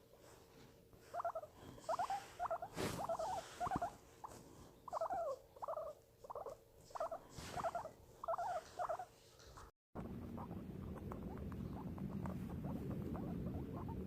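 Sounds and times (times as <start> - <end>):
guinea pig squeaking: 1.0 - 14.0.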